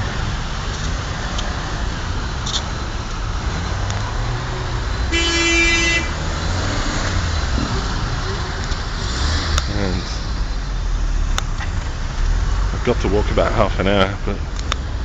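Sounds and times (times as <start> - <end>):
idling car engines: 0.0 - 15.0
car horn honking: 5.1 - 6.8.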